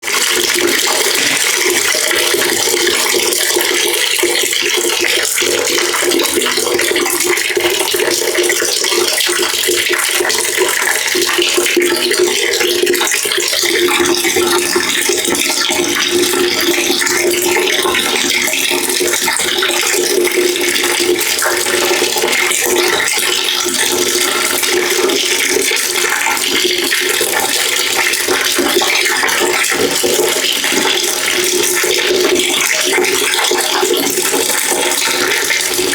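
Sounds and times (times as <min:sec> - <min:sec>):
water running into a bucket: 0:00.0 - 0:35.9.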